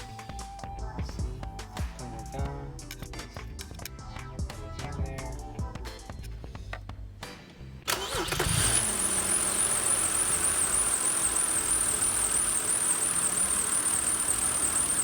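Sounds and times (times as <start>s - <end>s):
car engine starting and running: 7.8s - 15.0s.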